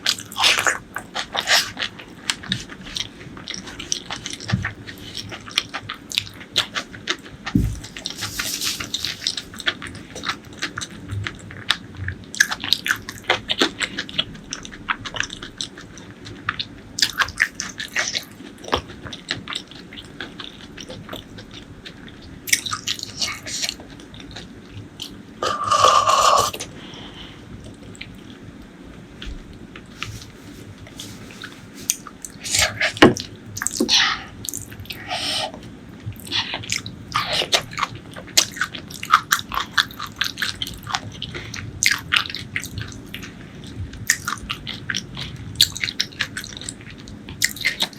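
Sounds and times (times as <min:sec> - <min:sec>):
wet chewing and mouth clicks: 0:31.0 - 0:47.9.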